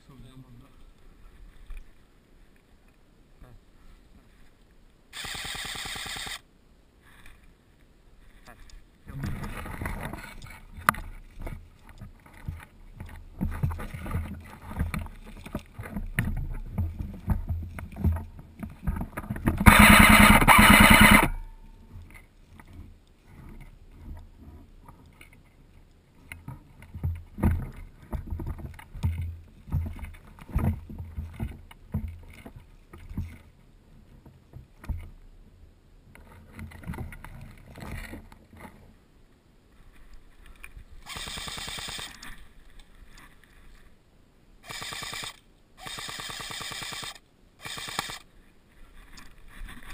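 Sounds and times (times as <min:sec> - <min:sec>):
airsoft rifle automatic burst: 0:05.2 - 0:06.4, 0:19.6 - 0:21.4, 0:41.1 - 0:42.2, 0:44.6 - 0:48.3.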